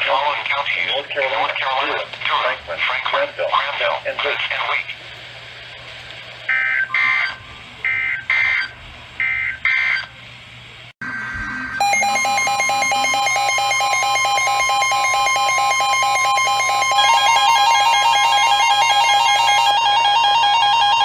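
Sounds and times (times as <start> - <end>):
electronic alert tone repeating: 11.6 - 21.0.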